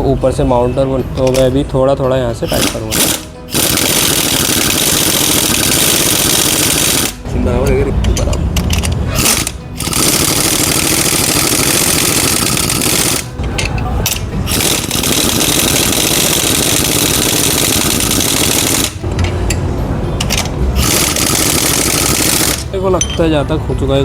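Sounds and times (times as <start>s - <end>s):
pneumatic impact wrench rattling: 2.5s - 7.2s, 8.2s - 19.6s, 20.2s - 22.7s.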